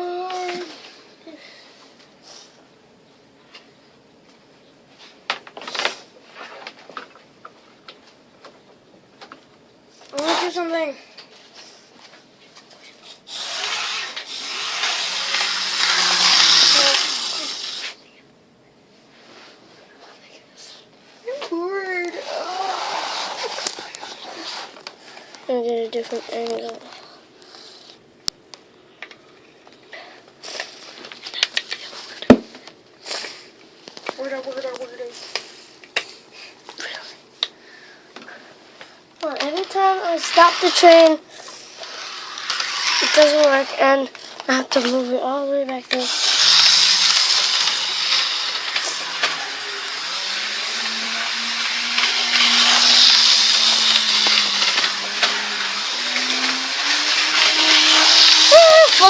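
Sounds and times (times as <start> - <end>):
steady hiss: 10.0 - 18.4, 19.0 - 28.1, 29.9 - 59.0
toy train motor whirring: 13.0 - 18.0, 21.4 - 24.9, 25.5 - 28.0, 30.4 - 32.0, 39.2 - 59.0.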